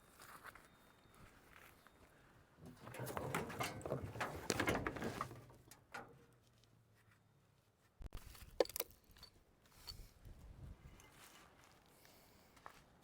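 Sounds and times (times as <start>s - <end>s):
scrap rustling and scraping: 2.6s - 6.0s.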